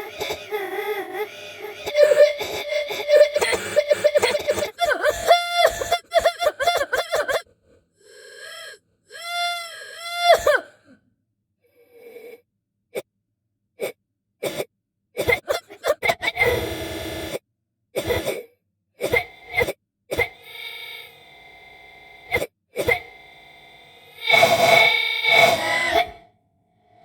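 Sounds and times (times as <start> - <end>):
person gagging: 0.0 - 7.5
person coughing and hacking: 1.4 - 7.5, 10.3 - 10.7, 15.2 - 16.3.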